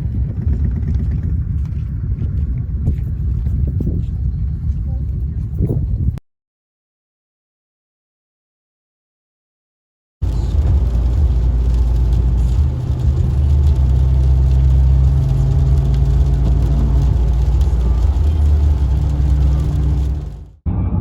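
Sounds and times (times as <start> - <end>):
car engine and road rumble: 0.0 - 6.2, 10.2 - 20.6.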